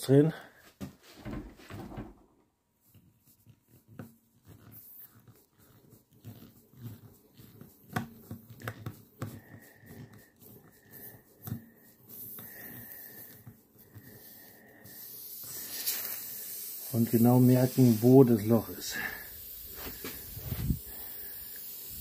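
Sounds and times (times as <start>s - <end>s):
air hissing from tyre: 9.3s - 22.0s.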